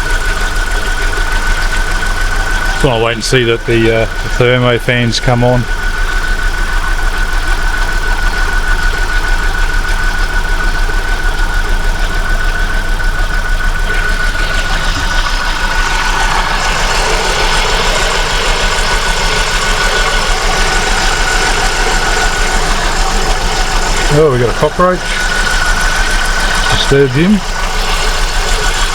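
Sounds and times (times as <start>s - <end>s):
car engine idling: 0.0s - 28.9s
high whine: 12.2s - 28.9s.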